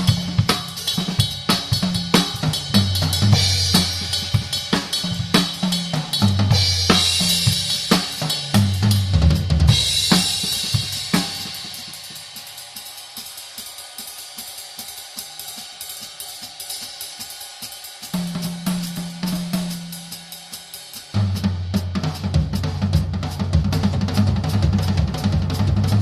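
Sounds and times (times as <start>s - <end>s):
light cymbal strokes: 0.0s - 9.1s, 9.7s - 22.3s
bass drum: 0.0s - 11.5s, 21.2s - 26.0s
cymbal crashes: 0.0s - 21.4s.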